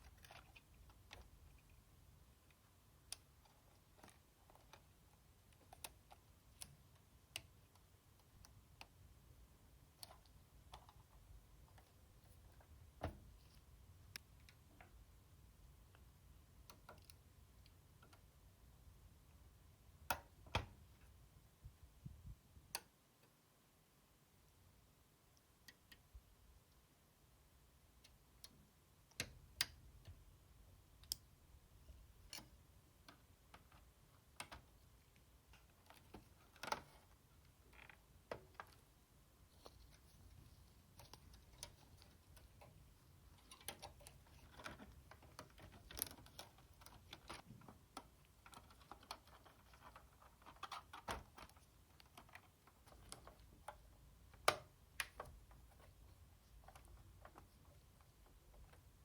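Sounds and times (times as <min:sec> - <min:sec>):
small clicks and taps of parts: 0:00.0 - 0:18.5, 0:19.1 - 0:23.4, 0:25.3 - 0:26.9, 0:27.9 - 0:59.0.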